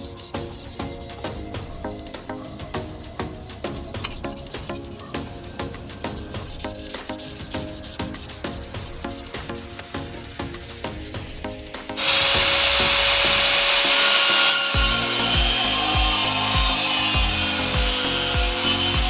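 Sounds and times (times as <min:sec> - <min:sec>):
background music with low beat: 0:00.0 - 0:19.0
power tool running: 0:12.0 - 0:19.0.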